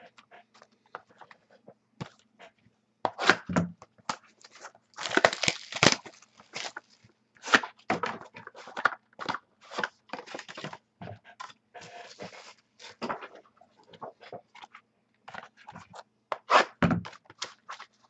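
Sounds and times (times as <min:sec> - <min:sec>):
packaging rustling and tearing: 0:04.1 - 0:07.1, 0:11.8 - 0:13.0.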